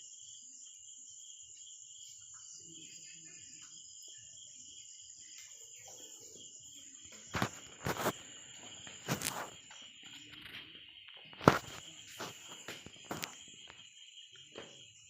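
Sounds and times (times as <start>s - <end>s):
crickets trilling: 0.0s - 15.0s
handling noise: 7.3s - 10.7s, 11.3s - 13.4s.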